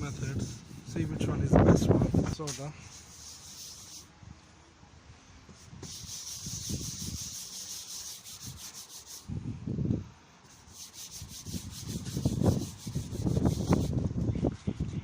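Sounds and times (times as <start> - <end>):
gritty scrubbing on plastic: 0.1 - 4.1, 5.6 - 9.3, 10.5 - 15.0.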